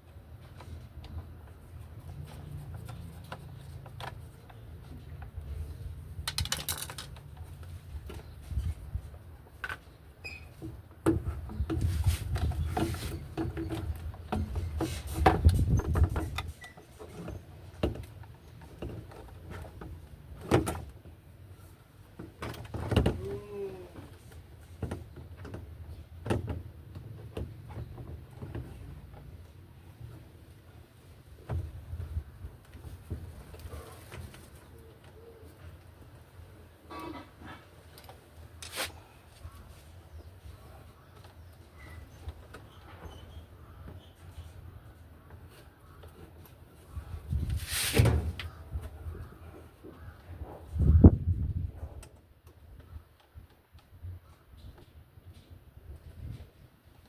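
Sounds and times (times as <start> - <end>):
clicks and handling noises: 0.3 - 8.8.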